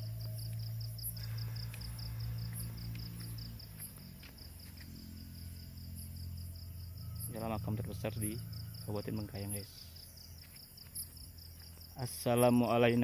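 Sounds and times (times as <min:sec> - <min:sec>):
low hum: 0:00.0 - 0:11.9
crickets chirping rapidly: 0:00.0 - 0:13.0.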